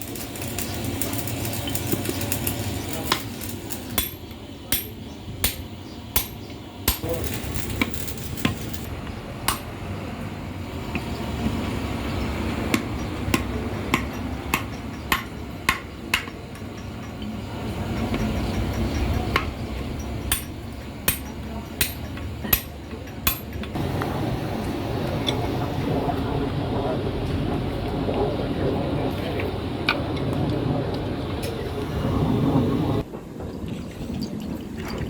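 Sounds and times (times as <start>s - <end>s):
hammer striking metal: 3.1s - 9.8s, 20.3s - 23.7s.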